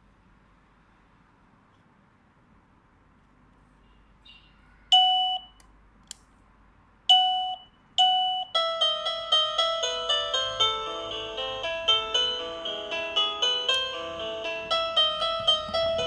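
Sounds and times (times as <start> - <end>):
electronic ringtone melody: 7.1 - 16.0.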